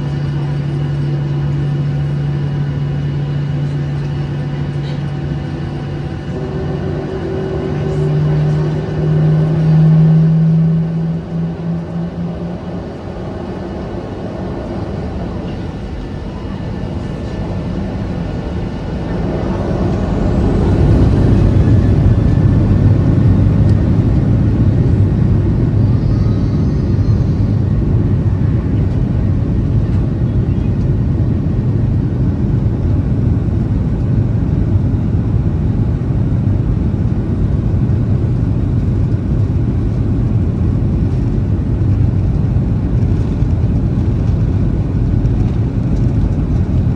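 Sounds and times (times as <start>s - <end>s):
jet engines spooling up: 0.0s - 30.2s.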